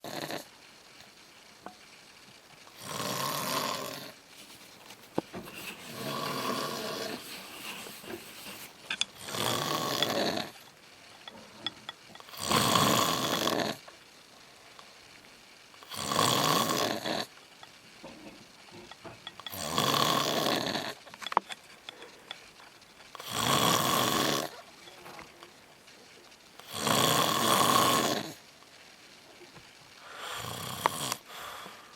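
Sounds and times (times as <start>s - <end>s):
man snoring loudly: 0.0s - 0.5s, 2.8s - 4.2s, 5.9s - 7.2s, 9.1s - 10.6s, 12.3s - 13.8s, 15.8s - 17.3s, 19.5s - 21.0s, 23.2s - 24.5s, 26.6s - 28.4s, 30.2s - 31.4s.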